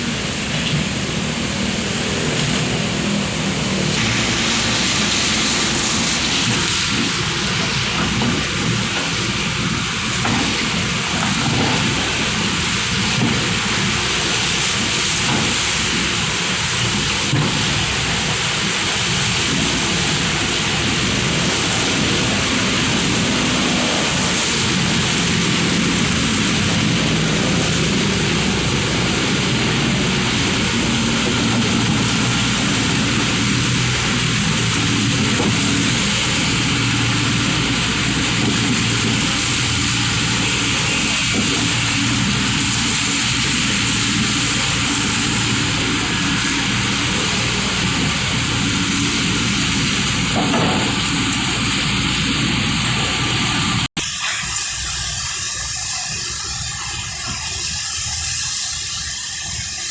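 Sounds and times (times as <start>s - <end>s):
engine low hum: 0.0s - 54.0s
constant loud hiss: 0.0s - 59.9s.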